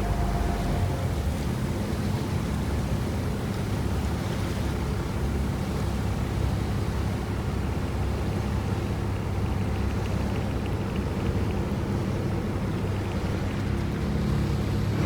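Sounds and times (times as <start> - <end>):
waves washing: 0.0 - 2.5
boat engine droning: 0.0 - 15.0.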